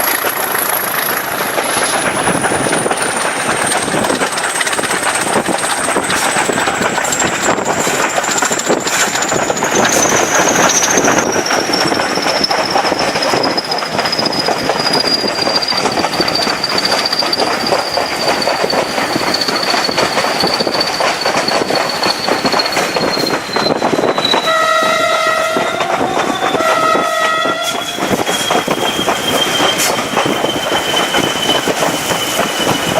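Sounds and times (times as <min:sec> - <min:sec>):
diesel locomotive engine working hard: 0:00.0 - 0:32.9
two-tone locomotive horn: 0:24.3 - 0:28.2.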